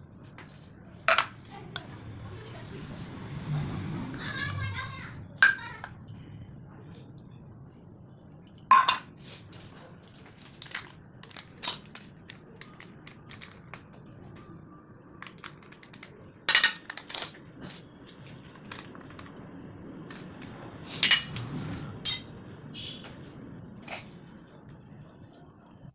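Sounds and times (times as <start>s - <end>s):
kitchen utensils clinking: 1.0s - 1.9s, 4.2s - 5.9s, 8.7s - 9.2s, 11.2s - 12.0s, 16.5s - 17.4s, 20.9s - 21.4s, 22.0s - 22.4s.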